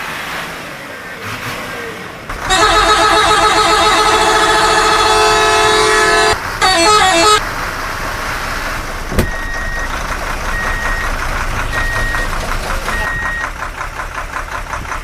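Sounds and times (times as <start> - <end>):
multi-tone truck horn: 2.3 - 7.4.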